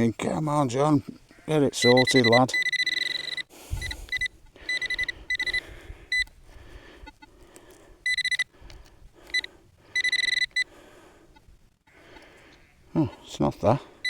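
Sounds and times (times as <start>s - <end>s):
pinpointer beeping: 1.8s - 6.4s, 8.0s - 8.5s, 9.3s - 10.7s.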